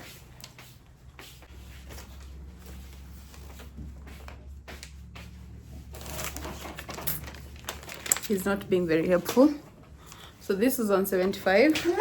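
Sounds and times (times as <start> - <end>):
faint clicks and rustles: 0.2 - 12.0.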